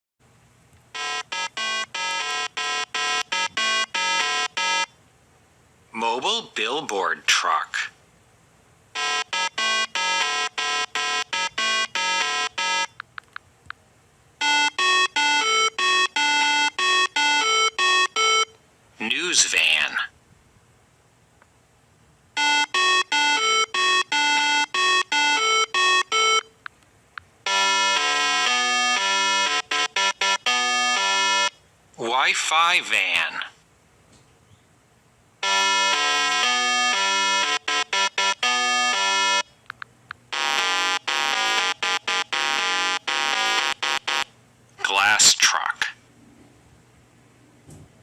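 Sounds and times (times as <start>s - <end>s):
buzzy electronic melody: 1.0s - 4.9s, 9.0s - 12.9s, 22.4s - 26.4s, 27.5s - 31.5s, 35.4s - 39.4s, 40.3s - 44.3s.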